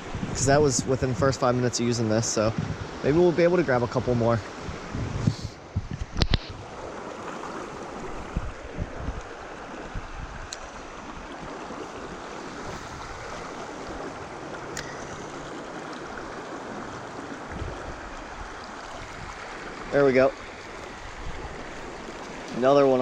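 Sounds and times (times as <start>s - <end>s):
creek water rushing: 0.0s - 5.0s, 6.5s - 23.0s.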